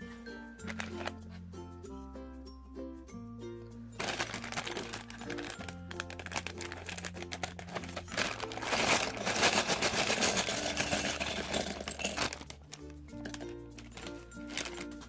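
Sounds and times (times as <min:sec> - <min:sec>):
background music with bass line: 0:00.0 - 0:15.0
plastic bags crinkling: 0:00.6 - 0:01.1, 0:04.0 - 0:15.0.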